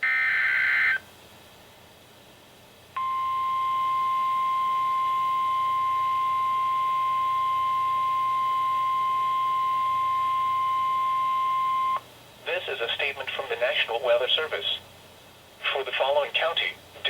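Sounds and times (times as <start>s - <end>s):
steady high alarm tone: 3.0s - 12.0s.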